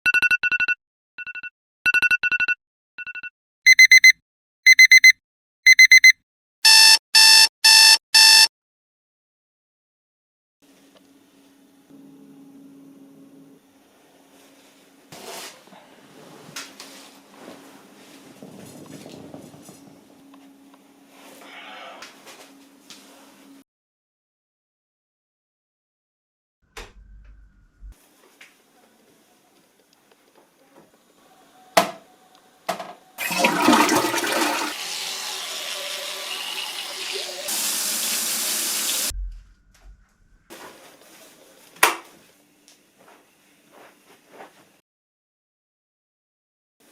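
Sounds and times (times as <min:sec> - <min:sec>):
rustling and shuffling: 0:14.3 - 0:20.2, 0:39.3 - 0:42.4, 0:43.0 - 0:44.8
toilet flushing water rush: 0:33.2 - 0:39.1.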